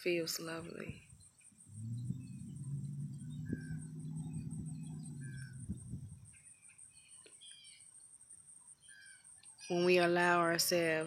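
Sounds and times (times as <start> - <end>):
low steady hum: 0.0 - 7.2
insects trilling: 0.1 - 11.0
bird chirps: 0.6 - 10.4.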